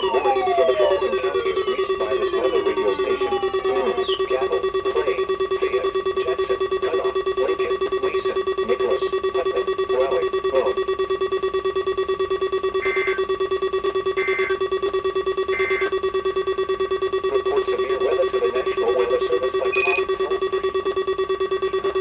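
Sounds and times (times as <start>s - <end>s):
rapidly pulsing alarm beep: 0.0s - 22.0s
faint broadcast speech: 0.1s - 10.8s, 17.3s - 20.5s
steady high tone: 19.6s - 20.1s
higher two-note beep: 19.7s - 20.1s.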